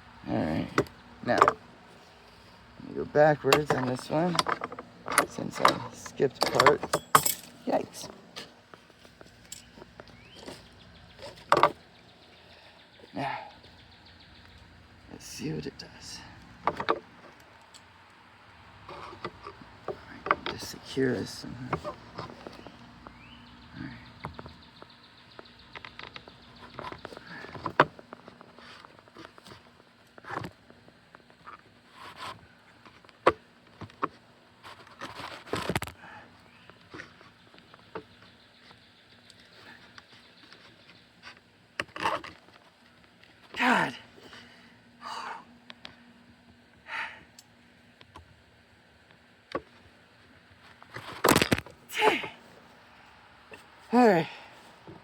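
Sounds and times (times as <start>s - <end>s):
clattering and scraping: 3.3s - 11.8s
person grunting: 45.0s - 45.5s, 51.9s - 52.4s, 53.9s - 54.5s
person breathing: 46.8s - 47.3s.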